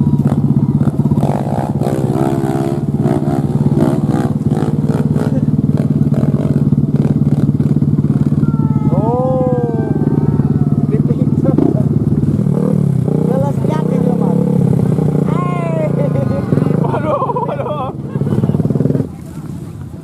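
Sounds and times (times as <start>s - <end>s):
voices talking: 0.0s - 7.2s, 8.2s - 20.0s
motorcycle engine running: 0.0s - 20.0s
short rising and falling call: 8.4s - 12.8s.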